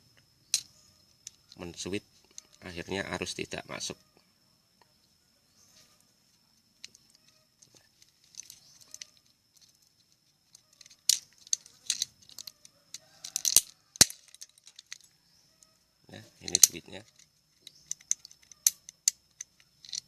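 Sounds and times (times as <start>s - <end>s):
plastic parts clicking and rattling: 6.8s - 15.7s, 16.4s - 20.0s.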